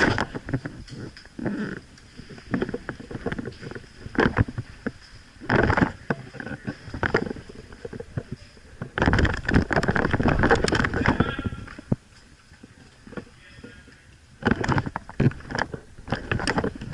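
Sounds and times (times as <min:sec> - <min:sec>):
clothing and gear rustling: 0:00.0 - 0:16.9.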